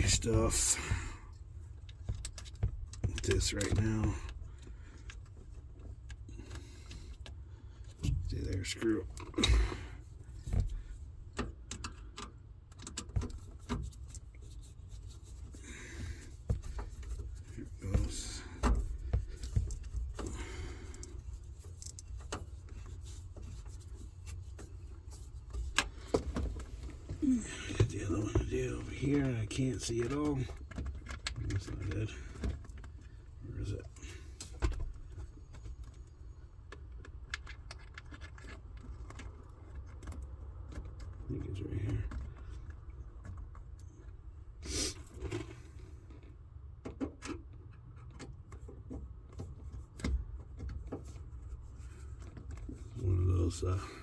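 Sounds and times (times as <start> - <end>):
hands fumbling under dashboard: 0.0 - 35.9.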